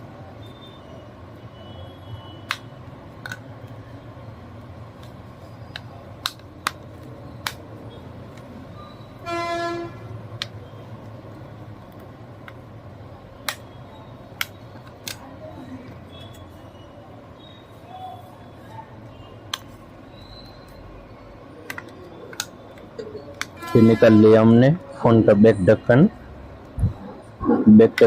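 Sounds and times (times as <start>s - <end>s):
plastic clicks and snaps: 2.4s - 3.8s, 5.0s - 7.7s, 13.4s - 13.7s, 14.4s - 15.3s, 21.6s - 23.6s
short horn toot: 23.6s - 24.3s.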